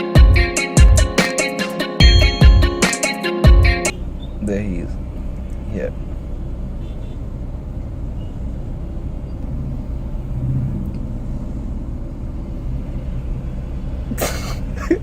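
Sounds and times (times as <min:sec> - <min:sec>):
vehicle engine and road noise: 0:03.9 - 0:15.0.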